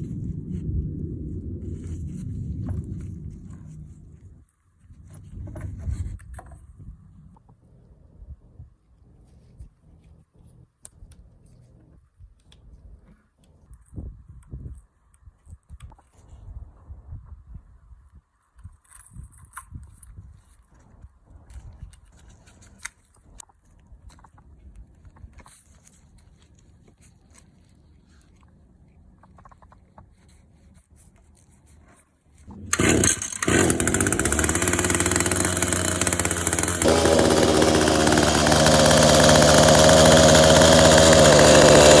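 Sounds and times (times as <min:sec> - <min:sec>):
two-stroke hedge trimmer engine: 0:32.5 - 0:42.0.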